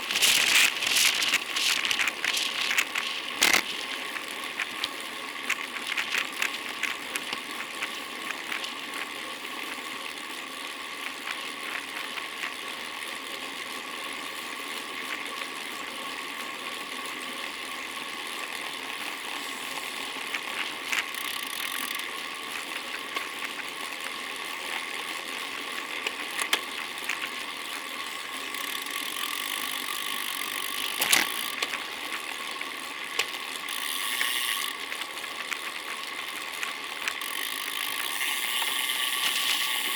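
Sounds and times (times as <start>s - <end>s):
bicycle freewheel ratcheting: 0.0s - 39.9s.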